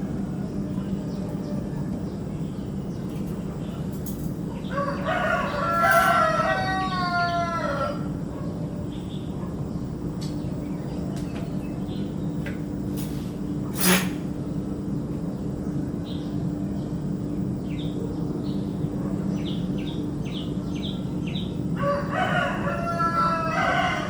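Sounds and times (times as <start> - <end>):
steady low hum: 0.0 - 24.0
rooster crowing: 4.6 - 8.4, 21.8 - 24.0.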